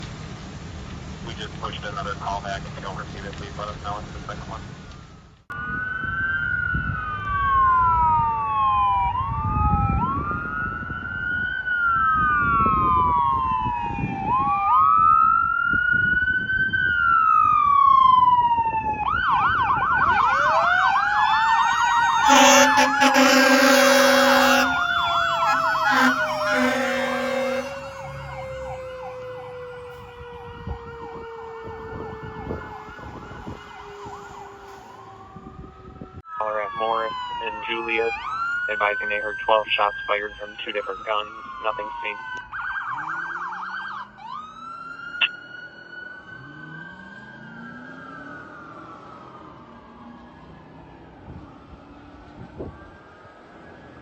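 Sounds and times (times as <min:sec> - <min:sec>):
engine and road rumble: 0:00.0 - 0:54.0
fire engine siren: 0:04.5 - 0:54.0
air horn blasts: 0:20.3 - 0:35.0.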